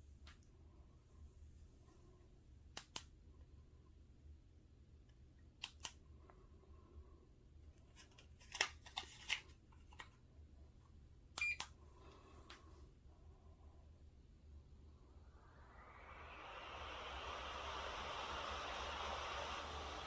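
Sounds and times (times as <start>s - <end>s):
low steady hum: 0.0s - 20.0s
sharp clicks and handling noises: 5.6s - 6.0s, 7.8s - 10.2s.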